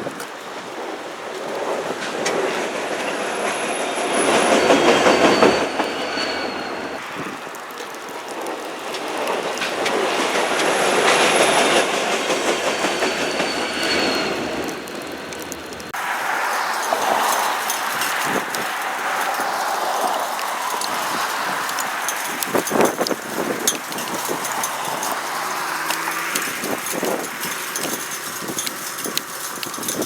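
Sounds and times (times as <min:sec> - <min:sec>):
train wheels clicking over rail joints: 0:01.3 - 0:30.0
high-pitched wheel squeal: 0:03.5 - 0:07.1, 0:12.6 - 0:15.4.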